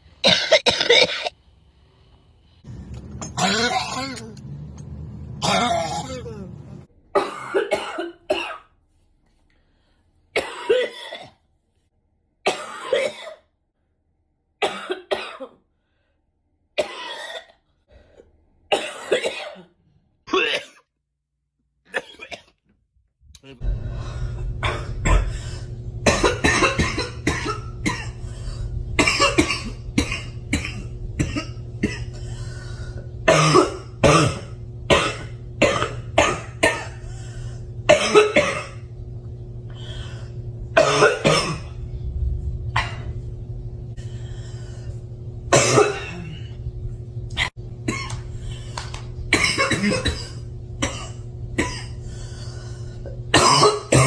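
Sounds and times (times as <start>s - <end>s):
low background hum: 0.0s - 20.9s, 21.8s - 54.0s
person coughing: 0.2s - 1.3s, 3.4s - 4.4s, 5.4s - 6.5s, 7.2s - 8.7s, 10.4s - 11.4s, 12.5s - 13.5s, 14.6s - 15.6s, 18.7s - 20.9s, 21.9s - 22.6s, 24.6s - 28.3s, 29.0s - 32.2s, 33.3s - 37.0s, 37.9s - 38.8s, 40.8s - 41.8s, 42.8s - 43.1s, 45.5s - 46.6s, 47.3s - 48.2s, 49.3s - 52.0s, 53.3s - 54.0s.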